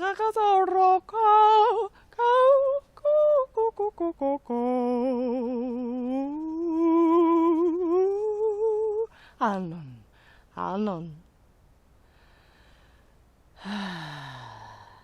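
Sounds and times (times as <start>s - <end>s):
woman chanting wordless syllables: 0.0s - 11.3s.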